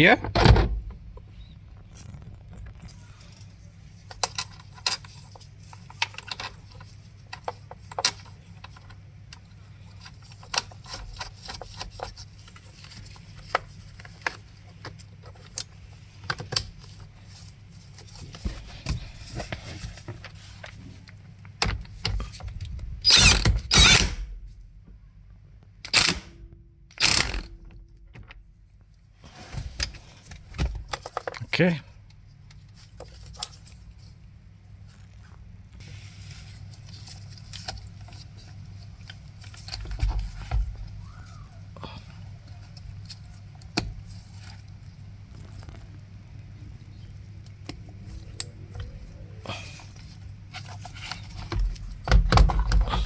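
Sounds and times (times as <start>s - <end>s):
socket ratchet clicking: 23.1s - 24.2s, 25.9s - 27.8s.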